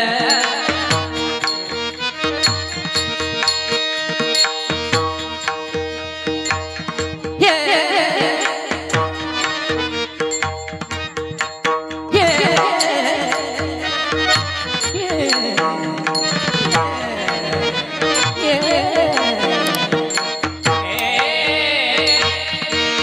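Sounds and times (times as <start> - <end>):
person singing melismatic notes: 0.0 - 2.3, 12.1 - 23.0.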